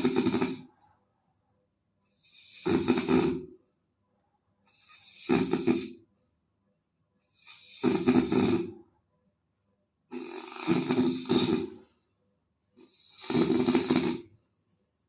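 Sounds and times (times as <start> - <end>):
loud snoring: 0.0 - 0.8, 2.1 - 3.6, 4.7 - 6.1, 7.3 - 8.9, 10.1 - 12.0, 12.8 - 14.4.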